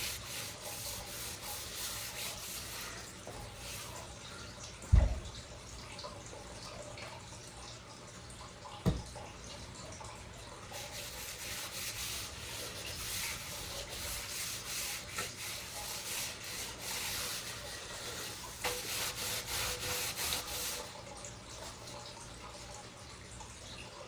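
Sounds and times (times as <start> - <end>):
scratchy rubbing on copper: 0.0 - 4.1, 10.8 - 20.9.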